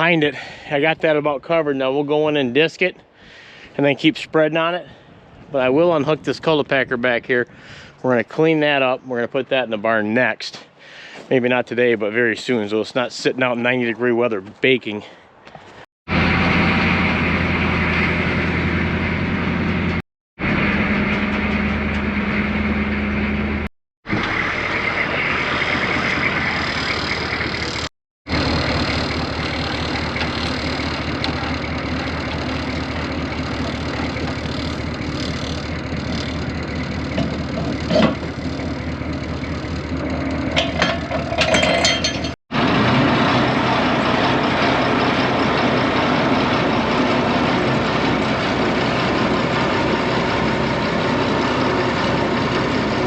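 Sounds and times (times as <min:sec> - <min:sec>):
tractor engine running: 0:16.1 - 0:53.0.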